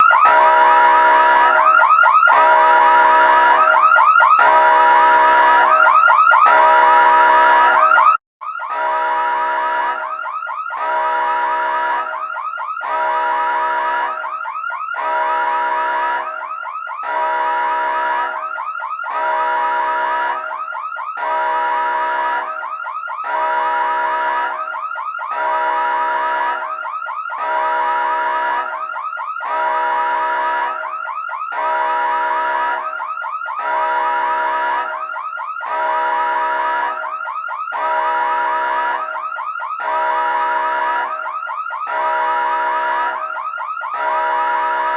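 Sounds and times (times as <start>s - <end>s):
emergency siren: 0.0s - 44.9s.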